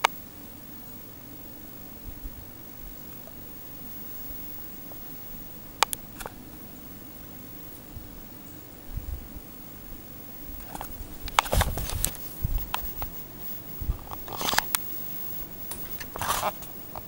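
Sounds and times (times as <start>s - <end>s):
ceiling fan humming: 0.0s - 17.0s
sharp clicks: 5.8s - 6.3s, 10.6s - 17.0s
rustling: 10.3s - 17.0s.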